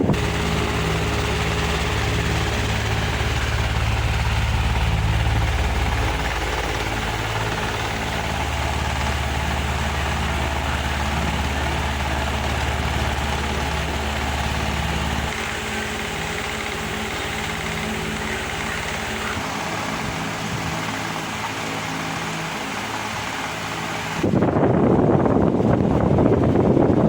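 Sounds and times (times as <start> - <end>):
fan blades rushing: 0.0 - 27.0
fan motor humming: 0.0 - 27.0
wind on microphone: 24.0 - 27.0.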